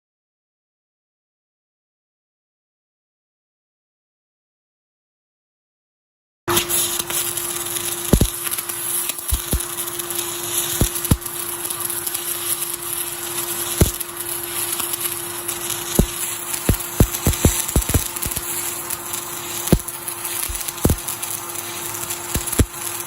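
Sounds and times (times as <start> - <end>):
sharp pops: 6.5 - 21.1, 22.2 - 22.8
welding arc hissing: 6.5 - 23.0.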